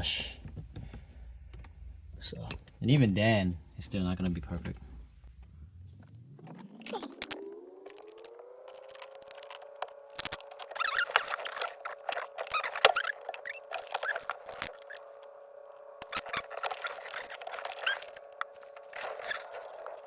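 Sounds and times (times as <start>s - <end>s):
steady hum: 0.0s - 20.0s
plastic parts clicking and scraping: 5.4s - 20.0s.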